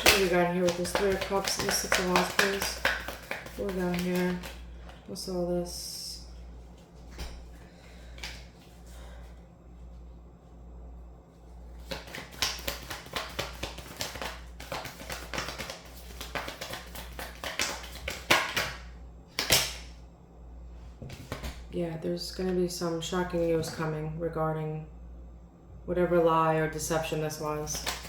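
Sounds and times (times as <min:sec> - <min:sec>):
cards clicking and snapping: 0:00.0 - 0:04.6, 0:11.8 - 0:18.8, 0:19.4 - 0:19.9, 0:27.7 - 0:28.0
faint card handling: 0:00.0 - 0:05.0.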